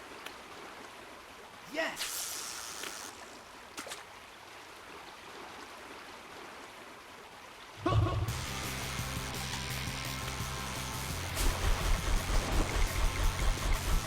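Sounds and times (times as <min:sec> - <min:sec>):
stream water flowing: 0:00.0 - 0:08.3, 0:09.6 - 0:14.0
person shouting: 0:01.7 - 0:02.2
background music: 0:07.8 - 0:14.0.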